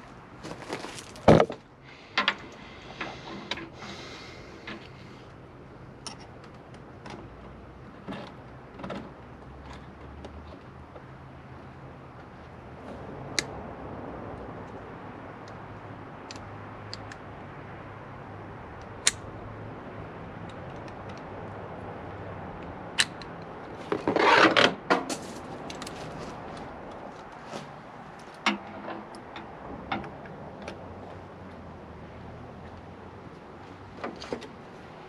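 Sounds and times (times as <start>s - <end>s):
rustling scrape: 0.4s - 1.3s, 23.8s - 26.6s
sharp clicks and knocks: 20.4s - 21.5s, 28.1s - 31.2s.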